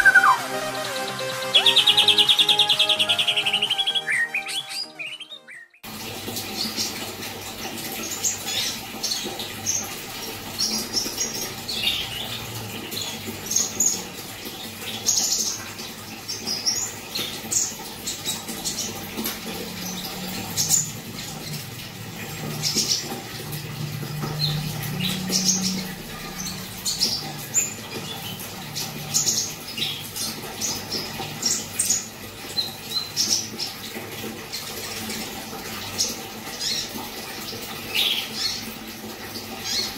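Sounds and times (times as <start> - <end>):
birds chirping: 0.0 - 5.8.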